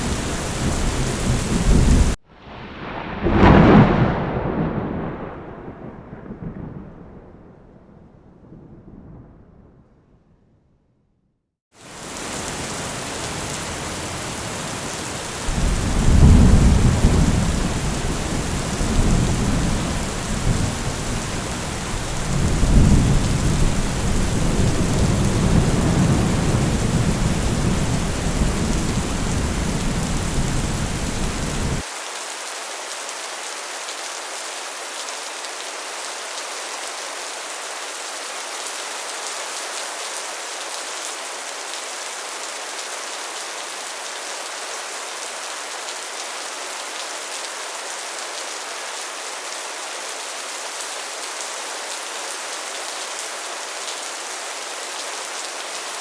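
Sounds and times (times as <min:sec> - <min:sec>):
heavy rain on a metal roof: 0:00.0 - 0:07.0, 0:11.8 - 0:56.0
thunder rumbling: 0:00.0 - 0:10.7, 0:12.2 - 0:31.8.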